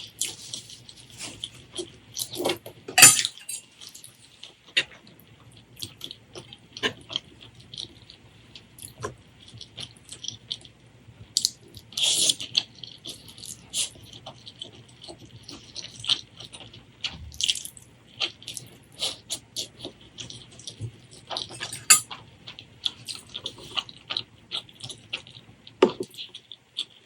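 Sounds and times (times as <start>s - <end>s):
wet chewing: 11.4s - 27.0s.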